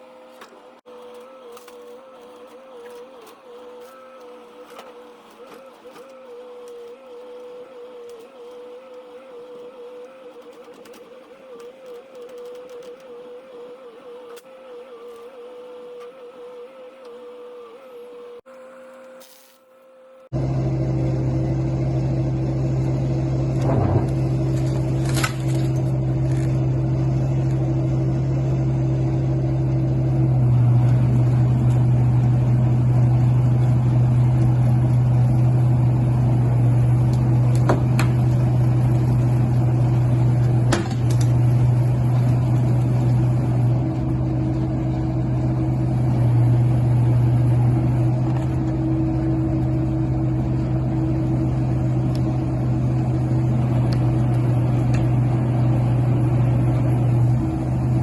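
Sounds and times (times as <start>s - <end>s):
heavy diesel engine running: 20.3s - 58.0s.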